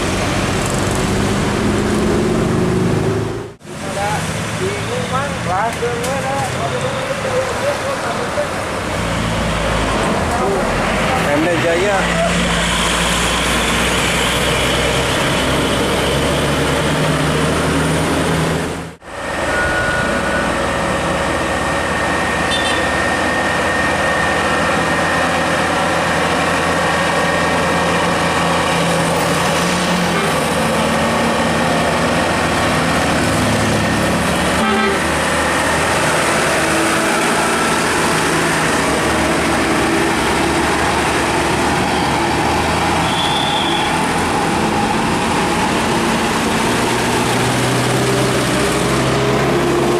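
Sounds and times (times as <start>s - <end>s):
bus engines: 0.0s - 49.9s
road traffic: 0.0s - 49.9s
horn toots: 22.5s - 23.0s, 34.6s - 35.1s, 43.0s - 44.0s.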